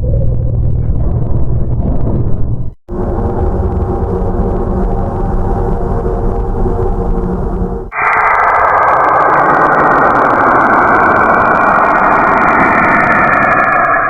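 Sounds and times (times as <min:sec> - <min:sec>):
dense steady noise: 0:02.9 - 0:14.0.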